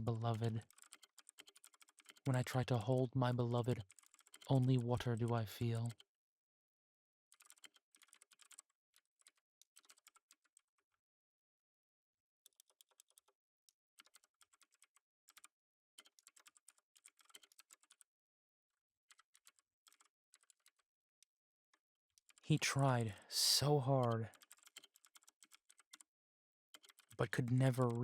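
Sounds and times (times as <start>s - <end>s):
keyboard typing: 0.0s - 3.0s, 3.6s - 6.0s, 7.3s - 10.6s, 12.5s - 13.3s, 14.0s - 18.1s, 19.1s - 20.8s, 22.2s - 26.1s, 26.8s - 28.0s.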